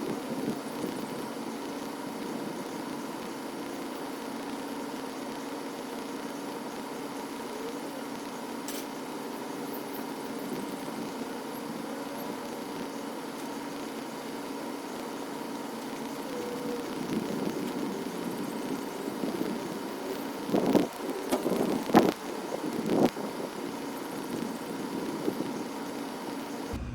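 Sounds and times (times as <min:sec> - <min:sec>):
engine idling: 0:26.7 - 0:26.9.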